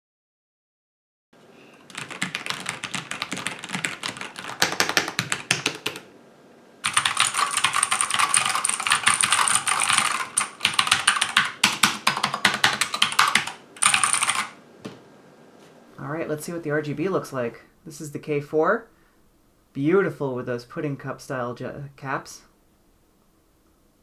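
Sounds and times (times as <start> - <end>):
mechanical keyboard typing: 1.9 - 6.1, 6.8 - 14.6.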